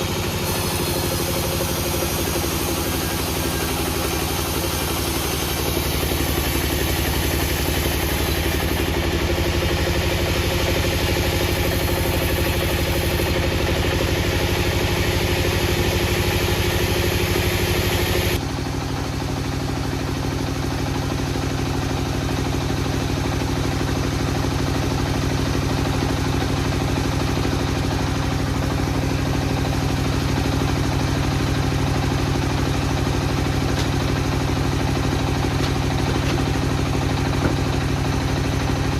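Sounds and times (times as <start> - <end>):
engine running: 0.0 - 38.9.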